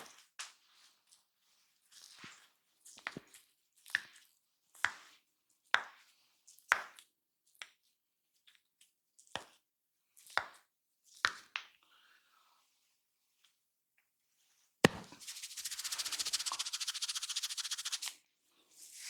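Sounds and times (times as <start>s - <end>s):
hands slapping head: 14.9s - 18.1s.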